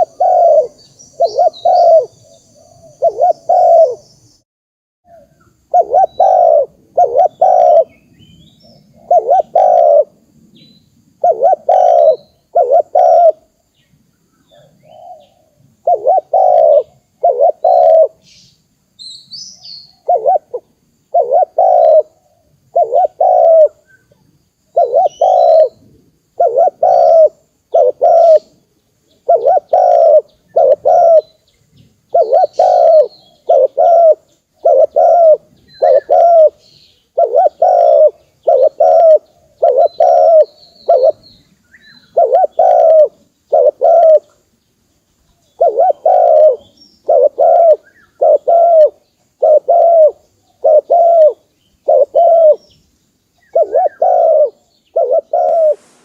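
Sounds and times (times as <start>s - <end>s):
dove cooing: 0.0s - 4.1s, 5.1s - 8.0s, 8.9s - 10.2s, 11.2s - 13.5s, 14.5s - 18.2s, 19.9s - 23.9s, 24.7s - 28.6s, 29.2s - 31.4s, 32.1s - 41.2s, 41.9s - 44.4s, 45.5s - 52.6s, 53.4s - 56.0s
faint small bird chirps: 0.0s - 4.4s, 10.5s - 56.0s.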